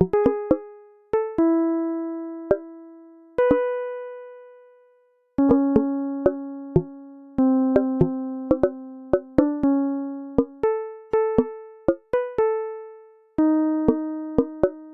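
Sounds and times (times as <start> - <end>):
light keyboard notes: 0.0 - 1.6, 3.4 - 3.8, 5.4 - 14.9
slow keyboard chords: 0.0 - 3.9, 5.4 - 12.6, 13.4 - 14.9.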